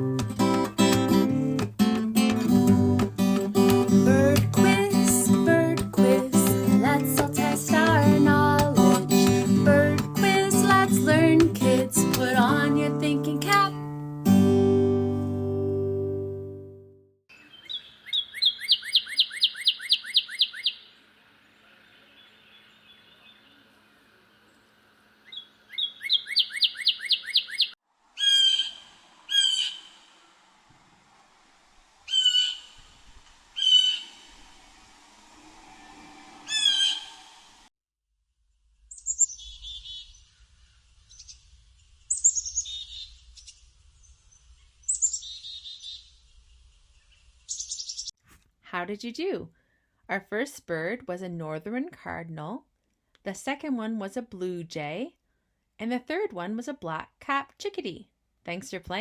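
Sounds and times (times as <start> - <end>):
chickadee calling: 17.3 - 21.0, 25.2 - 30.1, 32.1 - 33.0, 33.6 - 34.4, 36.5 - 37.2.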